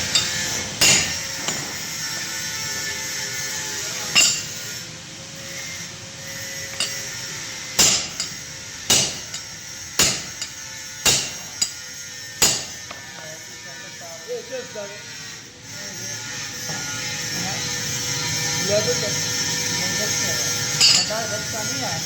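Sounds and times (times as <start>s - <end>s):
steady hum: 0.0s - 2.3s, 3.8s - 12.9s.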